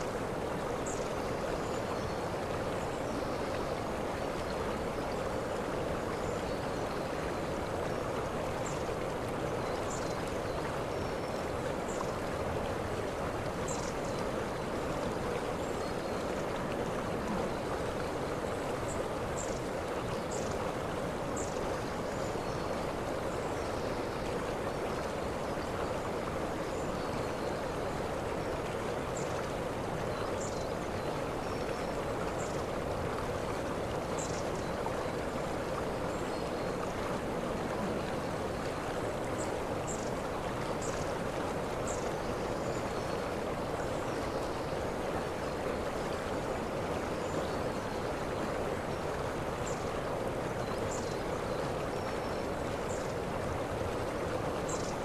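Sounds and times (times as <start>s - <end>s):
waterfall roaring: 35.0s - 41.0s.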